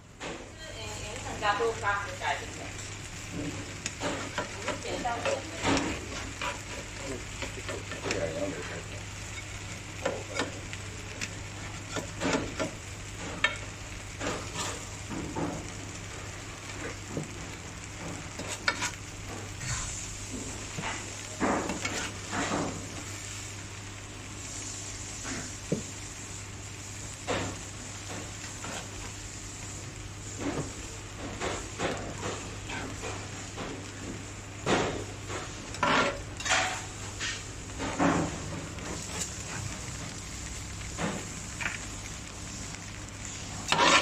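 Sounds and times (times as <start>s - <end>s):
food sizzling in a pan: 0.0s - 44.0s
metal utensils clinking and scraping: 35.7s - 39.6s, 43.6s - 44.0s.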